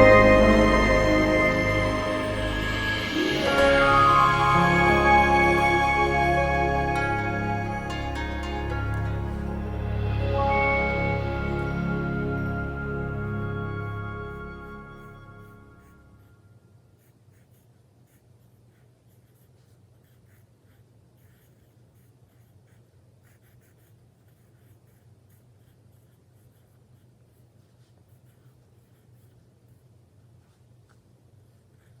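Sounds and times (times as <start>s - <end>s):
background music: 0.0s - 16.2s
pen scratching on paper: 17.0s - 29.9s.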